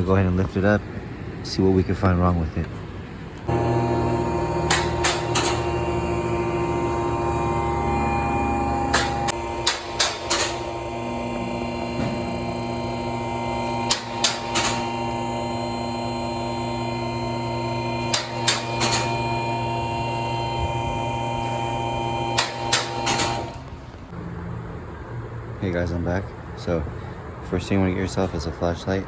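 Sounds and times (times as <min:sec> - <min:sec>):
vehicle lift motor hum: 0:02.8 - 0:25.2
sharp metallic clicks: 0:04.7 - 0:05.8, 0:08.9 - 0:10.8, 0:13.8 - 0:14.9, 0:18.1 - 0:19.1, 0:22.4 - 0:23.6.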